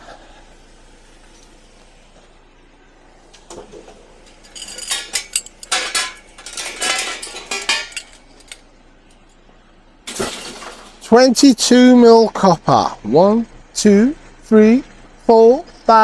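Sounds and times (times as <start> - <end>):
scrap metal clanking: 3.6 - 8.6.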